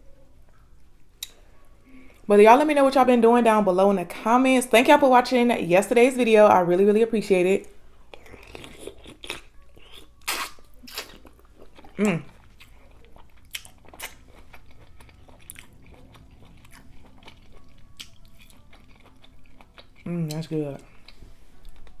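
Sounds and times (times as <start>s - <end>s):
wet chewing and lip-smacking: 7.6s - 22.0s.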